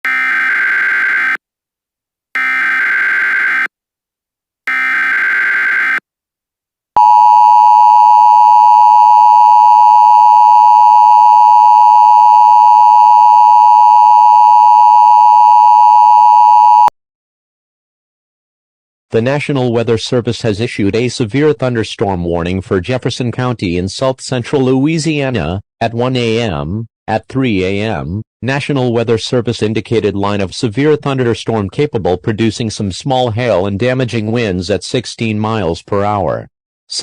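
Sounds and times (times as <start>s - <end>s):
steady attention tone: 7.0s - 16.9s.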